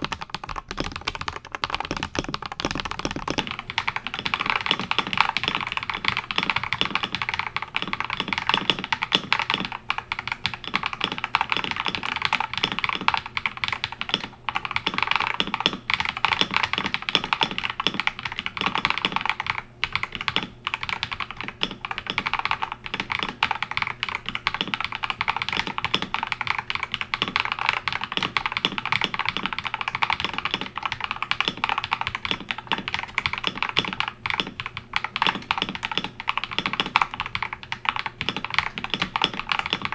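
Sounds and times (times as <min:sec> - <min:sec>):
fast mechanical keyboard typing: 0:00.0 - 0:39.9.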